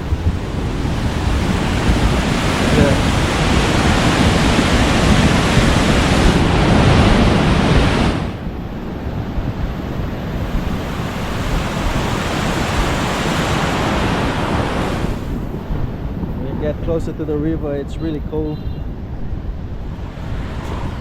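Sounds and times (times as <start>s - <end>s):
river rushing: 0.0s - 8.9s, 10.0s - 15.5s, 19.6s - 21.0s
wind buffeting microphone: 0.0s - 21.0s.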